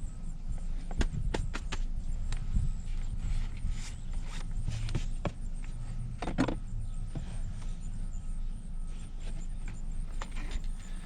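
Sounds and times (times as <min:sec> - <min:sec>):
low steady hum: 0:10.1 - 0:11.0.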